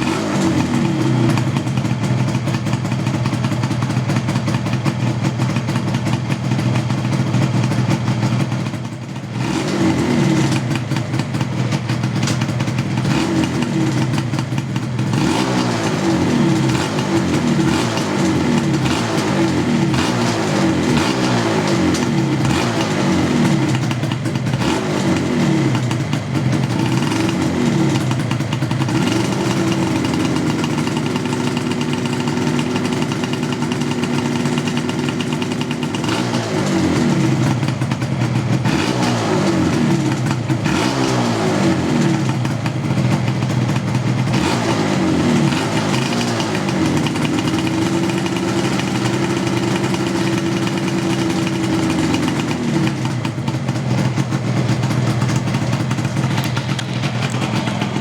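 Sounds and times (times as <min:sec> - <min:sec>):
two-stroke motorcycle engine revving: 0:00.0 - 0:58.0.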